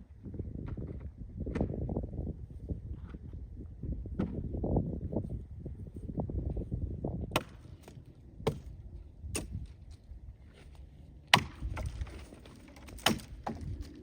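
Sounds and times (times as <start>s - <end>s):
axe chopping wood: 7.3s - 8.7s, 9.3s - 9.7s, 11.3s - 13.8s.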